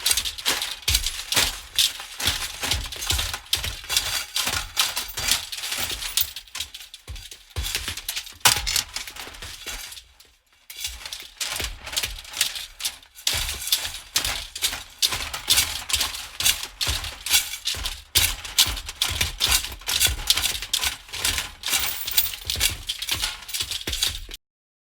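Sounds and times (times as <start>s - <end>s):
metal pieces rattling: 4.8s - 6.6s, 8.4s - 9.4s, 21.1s - 24.3s.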